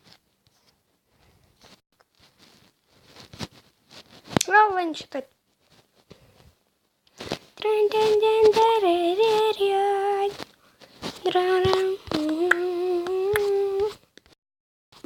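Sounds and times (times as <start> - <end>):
girl singing wordless tune: 7.6 - 10.5, 11.1 - 14.0.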